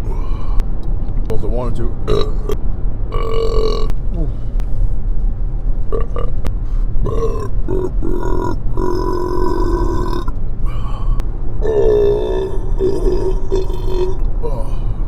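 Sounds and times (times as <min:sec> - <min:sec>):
car interior hum: 0:00.0 - 0:15.0
man belching: 0:02.1 - 0:03.9, 0:05.9 - 0:06.4, 0:07.0 - 0:10.3, 0:11.6 - 0:14.8.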